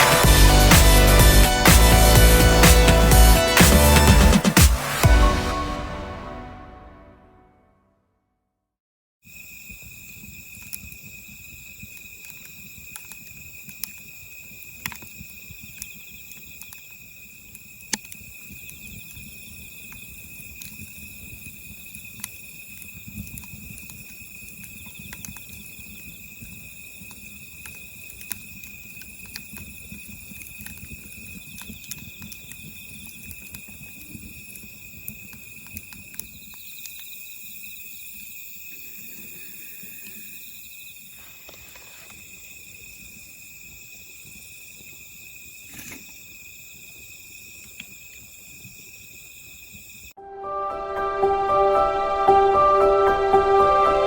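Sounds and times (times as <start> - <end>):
high-pitched whine: 0.0 - 7.6, 50.2 - 54.0.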